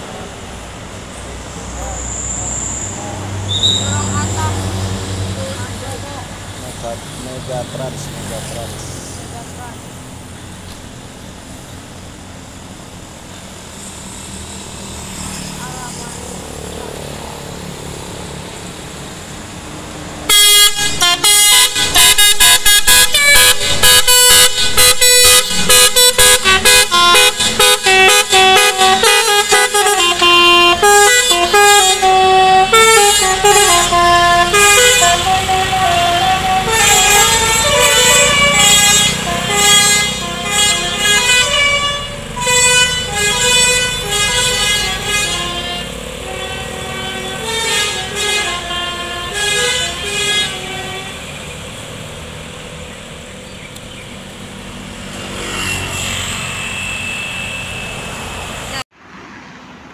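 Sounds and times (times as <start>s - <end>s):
bus horn playing a melody: 20.2s - 51.4s, 55.3s - 58.8s.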